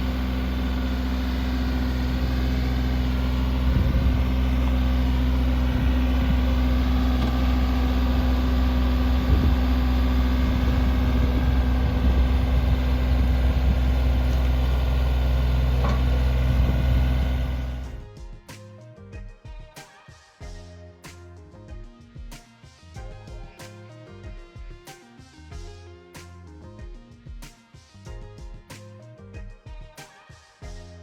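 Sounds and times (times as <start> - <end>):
tractor diesel engine running: 0.0 - 18.2.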